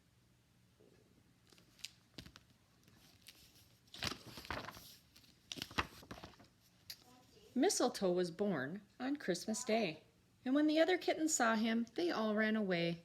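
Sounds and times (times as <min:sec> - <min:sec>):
soft clicks of book handling: 0:01.4 - 0:07.2
book pages rustling: 0:01.4 - 0:07.3.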